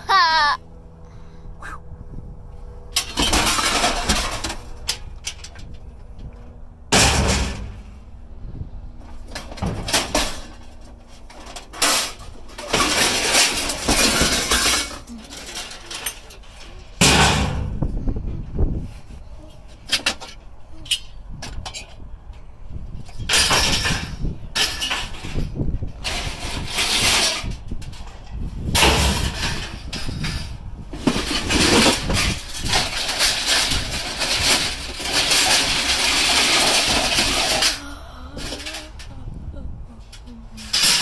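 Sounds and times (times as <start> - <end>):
scrap metal knocks and clinks: 9.3 - 18.0.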